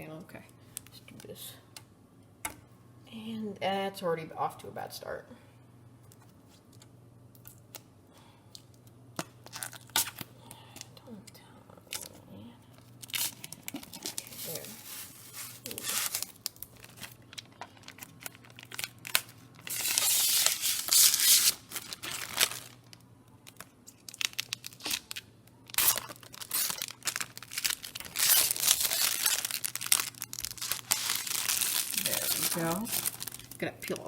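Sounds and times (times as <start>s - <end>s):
small clicks and crinkles: 6.0s - 7.9s, 8.5s - 21.0s, 21.7s - 34.0s
plastic film peeling off glass: 13.0s - 34.0s.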